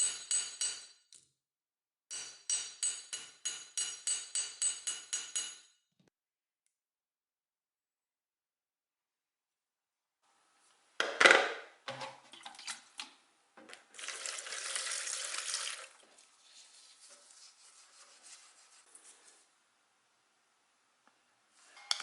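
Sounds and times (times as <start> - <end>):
running water: 13.8 - 16.3.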